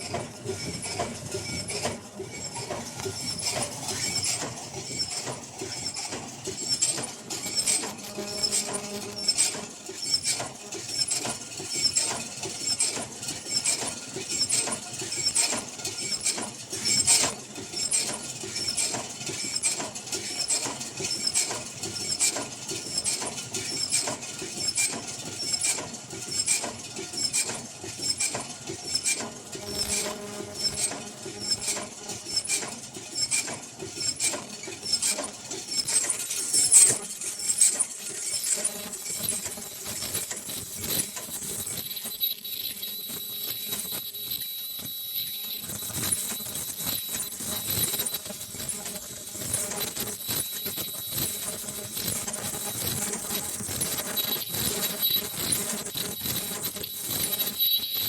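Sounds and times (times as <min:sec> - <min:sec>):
machine clicking and clattering: 0:00.0 - 0:58.0.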